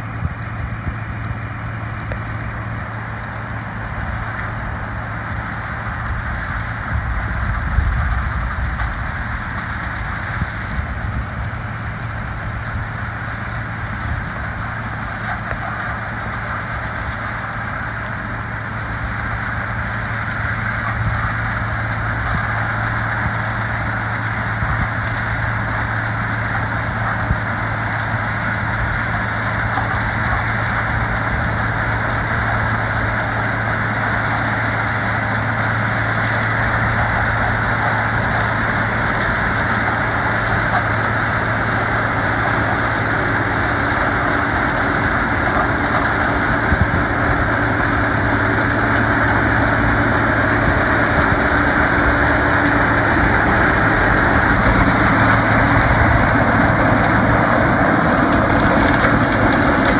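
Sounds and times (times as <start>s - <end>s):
diesel engine hum: 0.0s - 59.9s
wide rushing noise: 31.6s - 59.9s.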